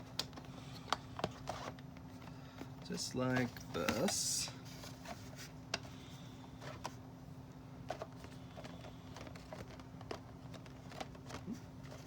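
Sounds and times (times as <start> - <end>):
plastic parts clicking and tapping: 7.9 - 12.0.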